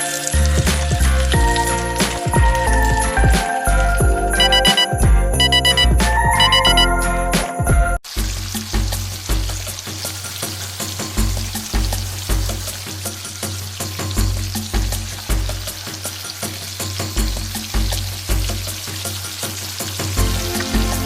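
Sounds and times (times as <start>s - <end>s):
rice sizzling in hot pan: 0.0s - 4.8s, 8.0s - 21.0s
background music with bass pulse: 0.3s - 8.0s, 20.2s - 21.0s.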